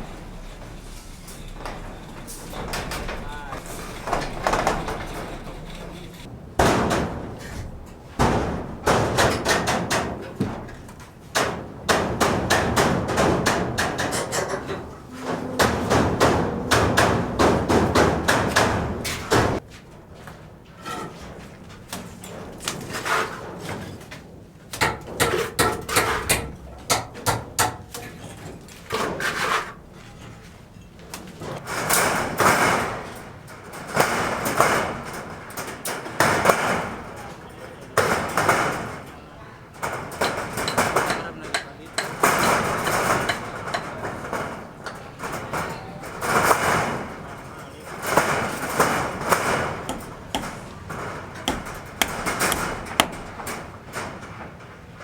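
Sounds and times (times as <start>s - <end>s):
hammering knocks and impacts: 0.0s - 19.6s, 24.7s - 28.0s, 48.0s - 54.6s.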